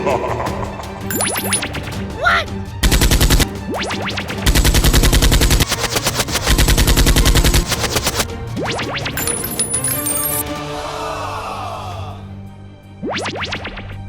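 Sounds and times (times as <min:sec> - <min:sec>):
automatic gunfire bursts: 0:02.8 - 0:03.5, 0:04.4 - 0:08.2.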